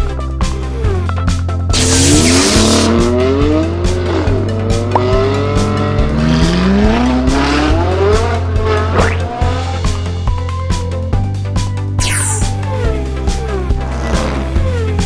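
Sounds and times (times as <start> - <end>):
background music with bass line: 0.0 - 15.0
race car engine: 0.7 - 11.3.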